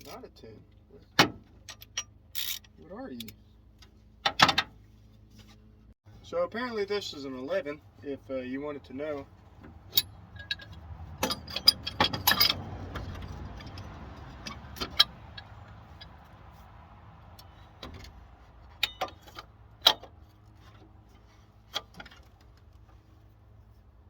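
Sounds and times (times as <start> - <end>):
metal tools clinking on bolts: 1.6 - 3.4, 9.9 - 16.2, 18.8 - 20.1.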